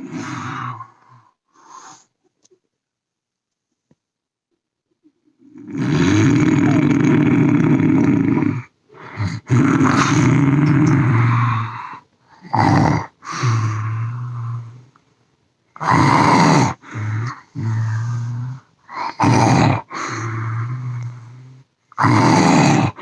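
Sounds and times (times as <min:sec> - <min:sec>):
person snoring loudly: 0:00.0 - 0:01.3, 0:05.4 - 0:14.9, 0:15.8 - 0:23.0.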